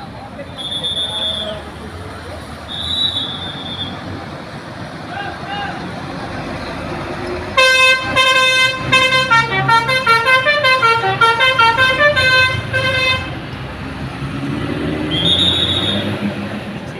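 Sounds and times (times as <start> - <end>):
bus horn playing a melody: 7.6 - 13.4.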